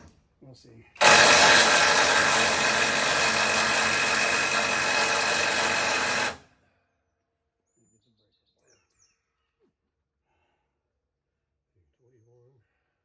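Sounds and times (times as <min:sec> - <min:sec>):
impact wrench hammering: 0:01.0 - 0:06.4.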